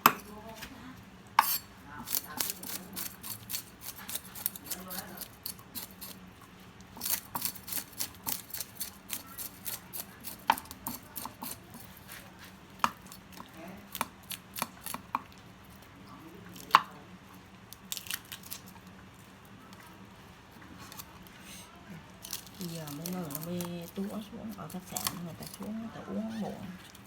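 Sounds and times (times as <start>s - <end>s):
knife cutting fish: 1.4s - 6.2s, 7.0s - 15.2s.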